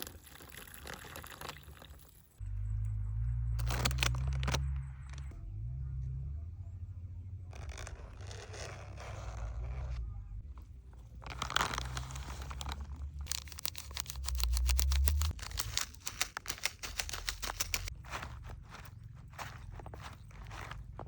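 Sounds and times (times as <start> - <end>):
low rumble: 2.4 - 13.3
rustling and tearing: 3.6 - 5.3, 7.5 - 21.0
sharp scraping clicks: 11.1 - 20.8.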